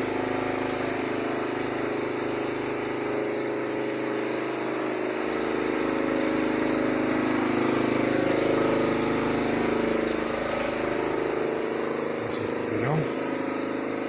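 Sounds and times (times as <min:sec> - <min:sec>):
motor humming: 0:05.2 - 0:14.0.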